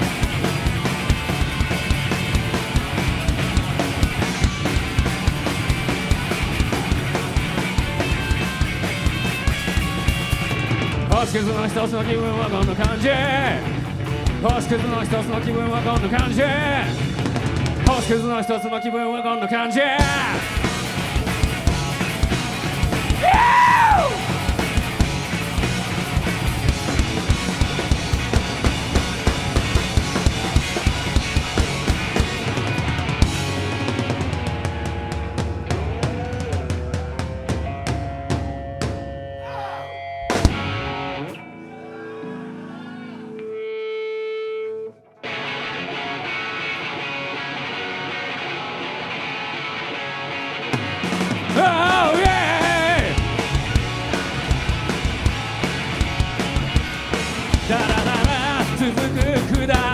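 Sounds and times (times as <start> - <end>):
drums hit hard: 0.0 - 11.5, 20.0 - 39.2, 40.3 - 41.1, 50.8 - 59.9
rock band playing: 0.0 - 59.9
guitar notes ringing: 39.9 - 50.8.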